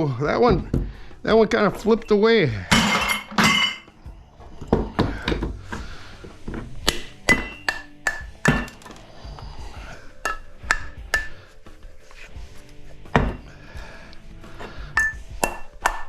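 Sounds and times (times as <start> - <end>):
hammer striking metal: 7.3 - 9.0.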